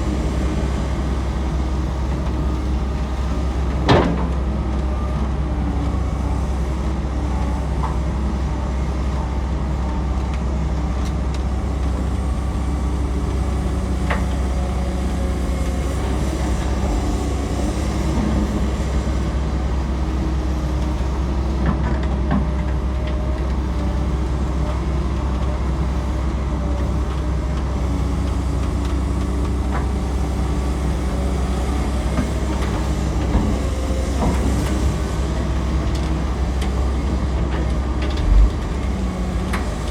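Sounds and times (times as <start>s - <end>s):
diesel engine running: 0.0s - 39.9s
machine knocks: 38.1s - 39.9s.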